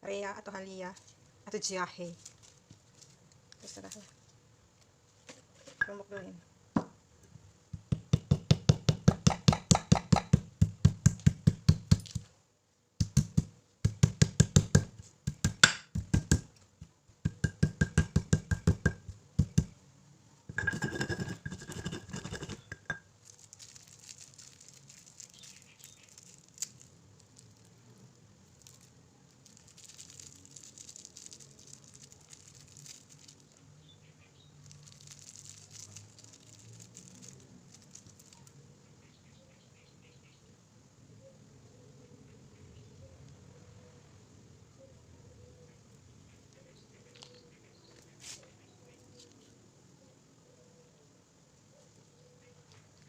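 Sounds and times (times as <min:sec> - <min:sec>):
pestle pounding in a mortar: 0:07.8 - 0:12.2, 0:13.0 - 0:16.5, 0:17.2 - 0:19.7.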